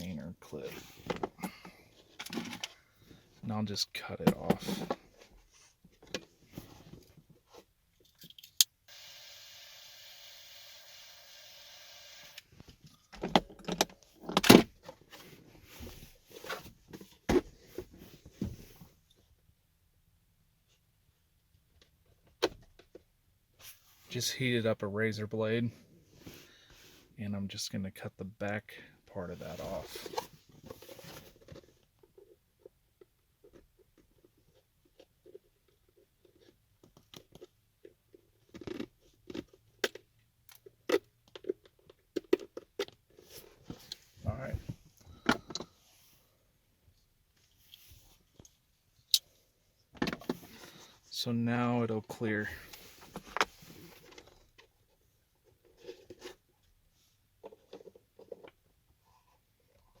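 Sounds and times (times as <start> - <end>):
plastic parts clicking and scraping: 1.0 - 2.8, 33.4 - 44.0.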